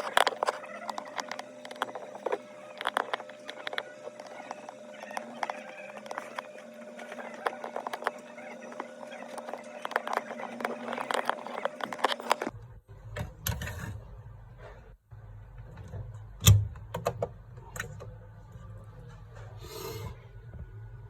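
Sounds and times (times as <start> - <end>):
steady hum: 0.0 - 15.8.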